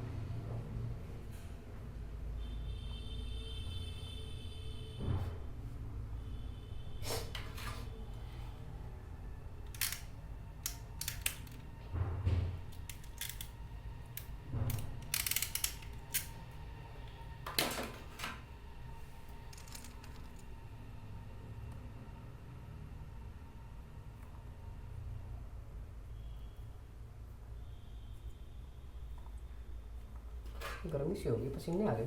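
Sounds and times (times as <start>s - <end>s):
hand tools clicking and snipping: 9.7s - 11.7s, 12.8s - 13.6s, 14.2s - 16.4s.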